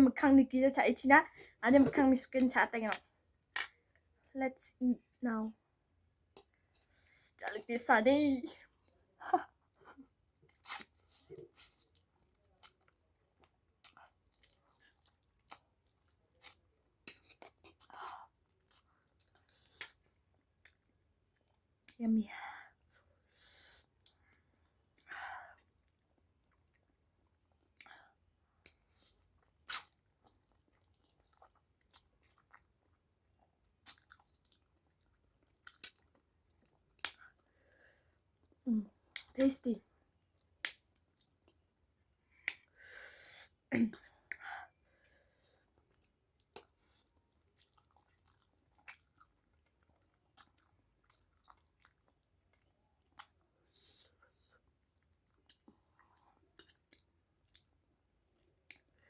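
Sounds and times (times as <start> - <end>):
person chewing noodles: 9.5 - 21.9, 22.8 - 39.3, 40.4 - 59.0
wet chewing mouth clicks: 33.8 - 37.4, 45.8 - 53.7
mouth clicks and smacks: 37.0 - 37.4, 40.6 - 41.6.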